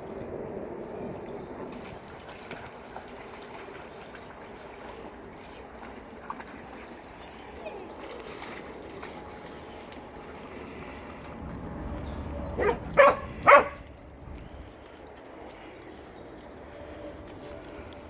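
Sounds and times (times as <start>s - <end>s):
dog barking: 12.6s - 13.8s.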